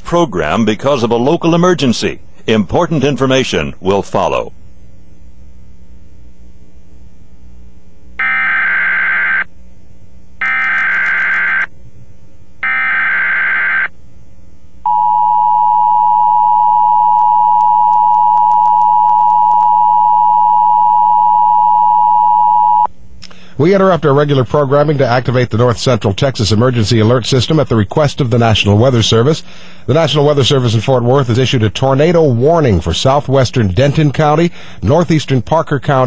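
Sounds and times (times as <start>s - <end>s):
low hum: 0.0s - 33.7s
digital header data bursts: 10.4s - 11.7s
two-tone attention signal: 14.9s - 22.9s.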